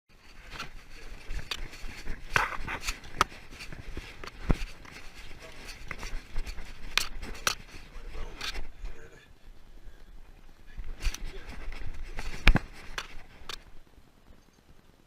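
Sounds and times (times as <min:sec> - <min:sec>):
knocks and scuffles: 0:00.1 - 0:09.0, 0:10.8 - 0:13.6.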